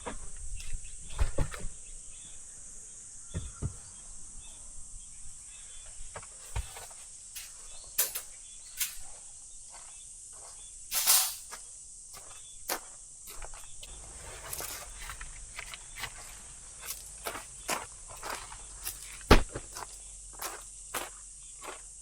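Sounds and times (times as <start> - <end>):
crickets droning: 0.0 - 22.0
knocks and rustles: 5.8 - 9.2.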